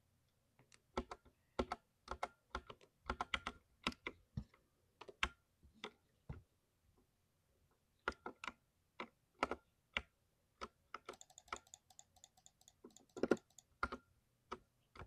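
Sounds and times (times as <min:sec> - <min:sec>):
mechanical keyboard typing: 0:11.0 - 0:14.0.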